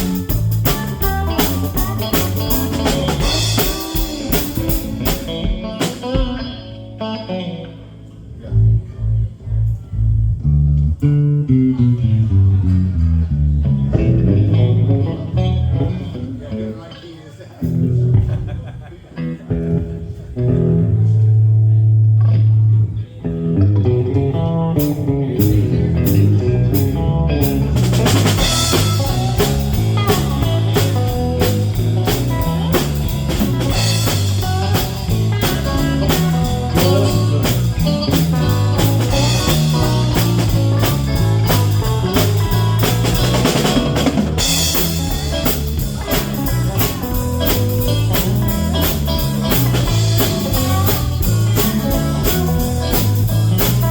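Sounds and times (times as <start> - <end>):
drum kit: 0.0 - 6.8, 13.9 - 15.1, 24.1 - 53.9
bass guitar: 0.0 - 17.0, 17.6 - 53.9
electric guitar: 0.0 - 53.9.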